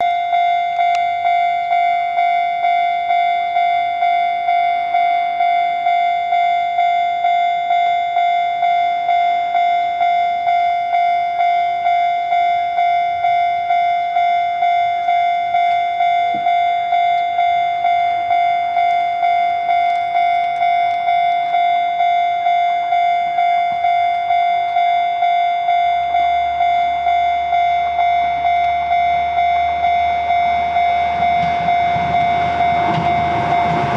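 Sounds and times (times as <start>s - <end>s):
level-crossing warning bell: 0.0s - 33.9s
diesel railcar rumble: 8.6s - 33.9s.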